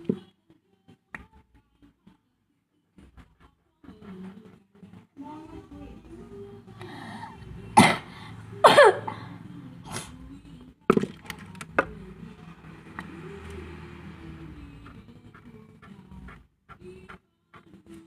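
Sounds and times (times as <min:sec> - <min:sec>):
person coughing: 0:07.8 - 0:09.4.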